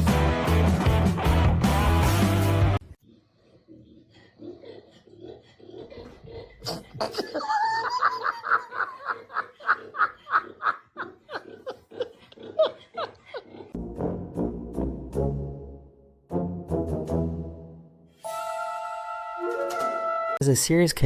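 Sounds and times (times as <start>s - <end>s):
music: 0.0s - 2.8s, 13.8s - 20.4s.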